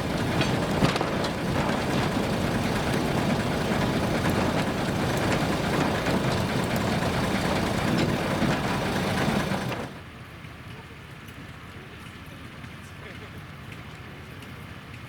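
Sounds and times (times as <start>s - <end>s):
train cars rattling on track: 0.0s - 10.0s
locomotive engine droning: 0.0s - 10.1s.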